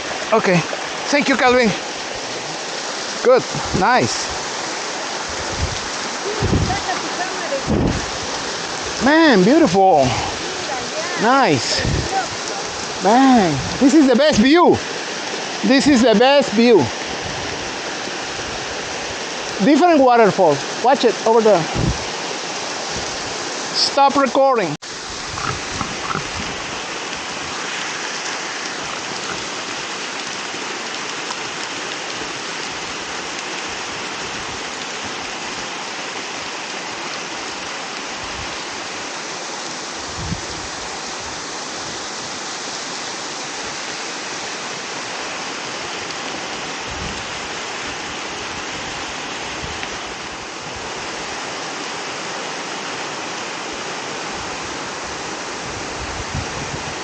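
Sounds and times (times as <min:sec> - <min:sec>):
waterfall rushing: 0:00.0 - 0:57.0
low thumps: 0:21.7 - 0:22.1.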